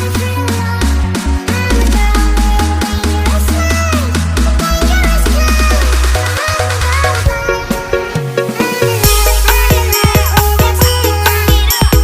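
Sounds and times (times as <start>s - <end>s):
deep bass line: 0.0s - 12.0s
electronic dance music: 0.0s - 12.0s
synth melody: 1.7s - 10.0s.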